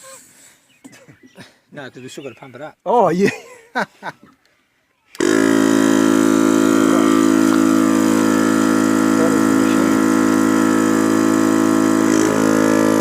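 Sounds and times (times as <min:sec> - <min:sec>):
electric air compressor humming: 0:05.2 - 0:13.0.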